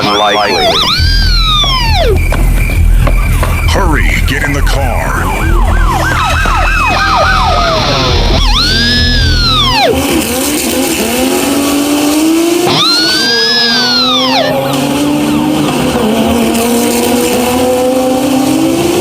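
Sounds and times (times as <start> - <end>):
music: 0.0 - 11.5
car engine revving: 0.0 - 19.0
tire squeals: 0.0 - 19.0.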